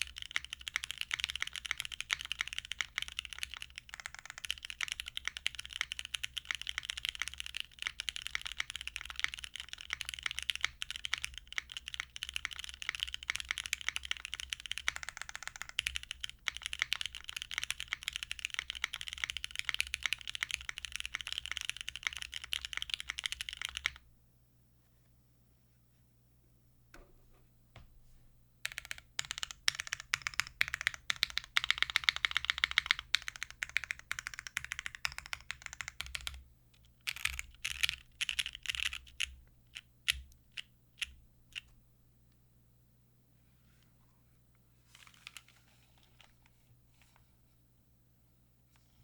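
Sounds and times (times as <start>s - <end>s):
fast typing on mechanical keyboard: 0.0s - 24.0s, 28.6s - 41.7s.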